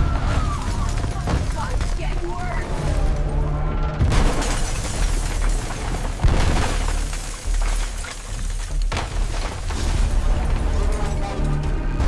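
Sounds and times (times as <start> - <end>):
crashes and breaking debris: 0.0 - 12.0
deep earthquake rumble: 0.0 - 12.0.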